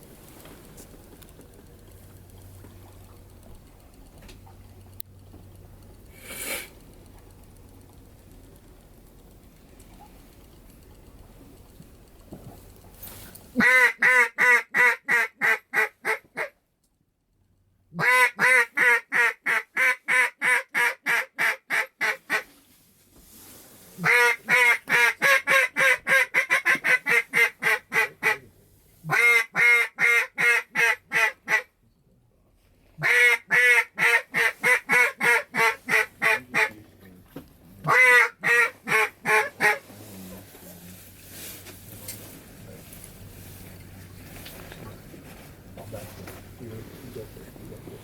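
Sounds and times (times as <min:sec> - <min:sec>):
duck call quacks: 0:13.6 - 0:16.6, 0:18.0 - 0:22.5, 0:24.0 - 0:28.4, 0:29.1 - 0:31.7, 0:33.0 - 0:36.8, 0:37.8 - 0:39.9.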